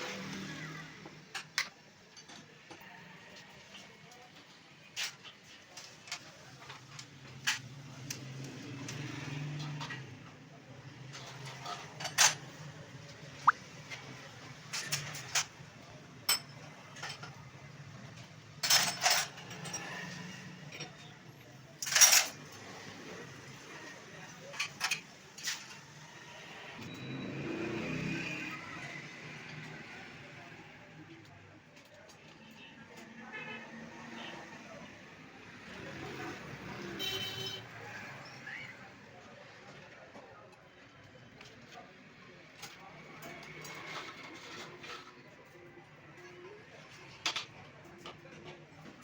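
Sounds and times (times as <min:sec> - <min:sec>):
metal parts and tools clinking: 0:21.8 - 0:22.4.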